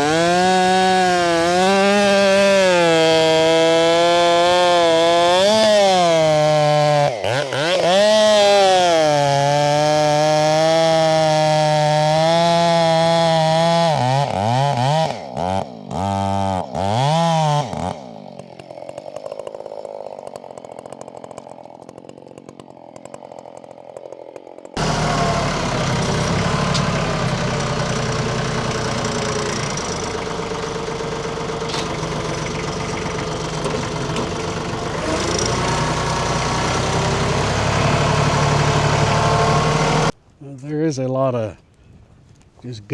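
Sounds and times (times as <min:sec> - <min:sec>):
chainsaw cutting log: 0:00.0 - 0:40.3
tractor engine idling: 0:24.8 - 0:40.4.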